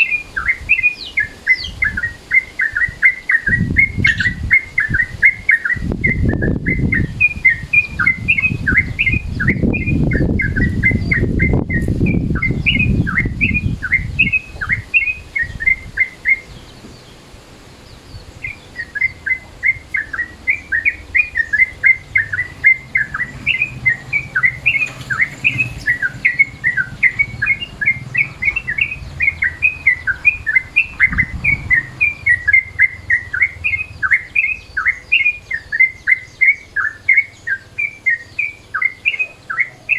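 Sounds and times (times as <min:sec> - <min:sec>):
bird singing chattering notes: 0:00.0 - 0:39.9
low rumbling noise: 0:16.6 - 0:34.8.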